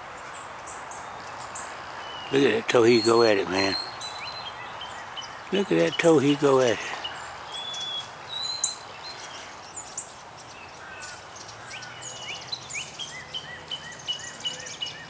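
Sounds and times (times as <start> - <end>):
songbirds chirping and singing: 0.0 - 15.0
steady outdoor hiss: 0.0 - 15.0
buzzy bird trill: 2.2 - 8.9.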